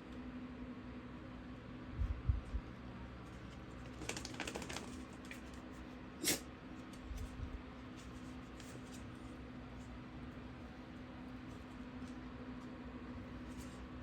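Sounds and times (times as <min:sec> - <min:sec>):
puppies' claws clicking and scuffling: 0:03.3 - 0:05.6.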